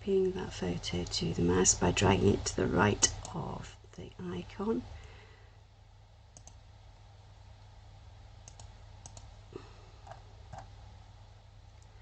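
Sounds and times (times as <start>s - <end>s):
steady low hum: 0.0s - 12.0s
computer mouse clicks: 6.3s - 6.6s, 8.4s - 9.3s.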